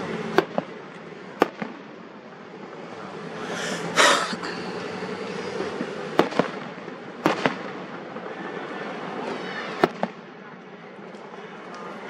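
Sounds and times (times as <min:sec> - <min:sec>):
sharp firework cracks: 0:01.4 - 0:01.8, 0:06.2 - 0:08.2.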